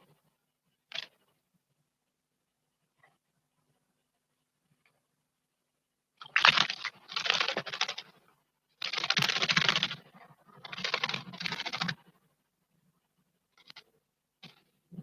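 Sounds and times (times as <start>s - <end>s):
wing fluttering: 0.9s - 1.4s, 6.2s - 12.3s, 13.5s - 15.0s.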